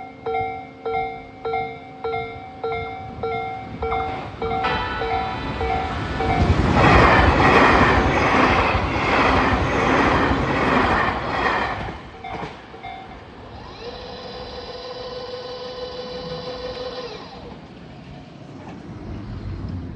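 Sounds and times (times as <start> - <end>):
electric train passing: 0.0 - 19.9
train wheels clacking over rail joints: 3.9 - 14.8.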